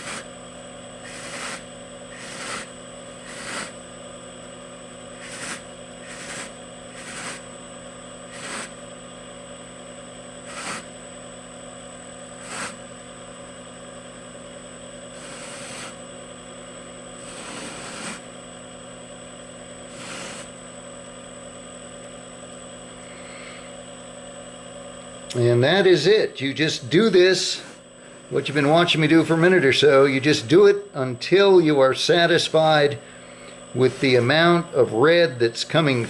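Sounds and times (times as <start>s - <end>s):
pipe swishing on buffing wheel: 0.0s - 0.3s, 1.0s - 3.8s, 5.1s - 7.5s, 8.3s - 8.8s, 10.4s - 10.9s, 12.4s - 12.8s, 15.1s - 16.0s, 17.2s - 18.3s, 19.9s - 20.5s, 33.8s - 34.4s
buffer motor humming: 0.0s - 36.0s.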